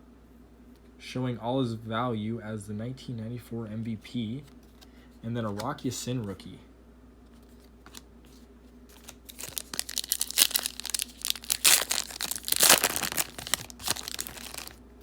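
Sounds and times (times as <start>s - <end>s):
plastic wrapper tearing and crinkling: 8.9s - 14.8s.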